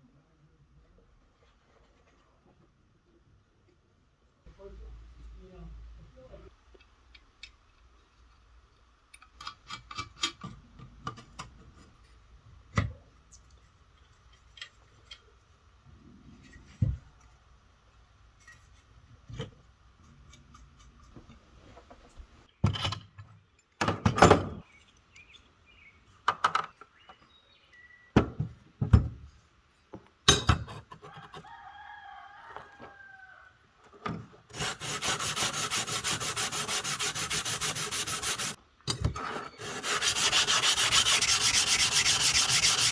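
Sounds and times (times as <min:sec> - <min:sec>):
rooster crowing: 0:31.1 - 0:33.6
hand sanding: 0:34.5 - 0:38.6, 0:39.6 - 0:42.9.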